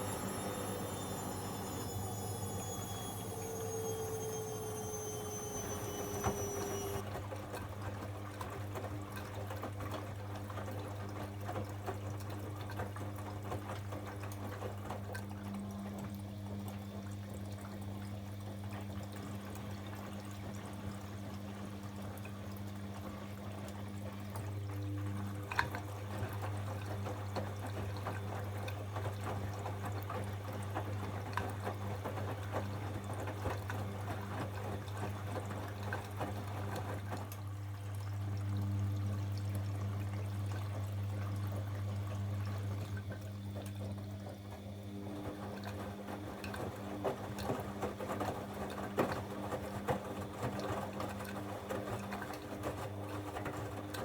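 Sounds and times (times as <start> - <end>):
falling whine: 0.0 - 7.0
low machine hum: 0.0 - 7.1, 32.6 - 48.8
water splashing in washing machine: 0.0 - 54.0.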